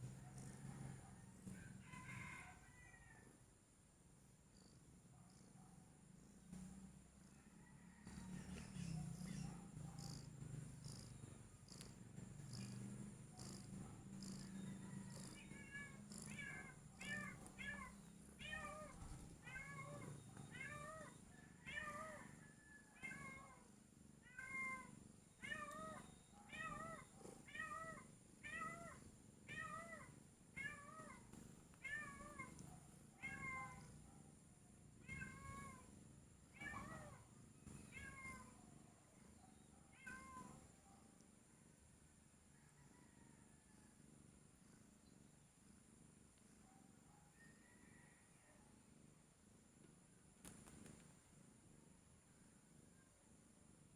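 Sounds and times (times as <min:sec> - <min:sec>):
cat meowing: 0:14.6 - 0:22.3, 0:24.2 - 0:31.2, 0:33.2 - 0:33.9, 0:35.0 - 0:35.9, 0:37.9 - 0:38.5, 0:39.9 - 0:40.6.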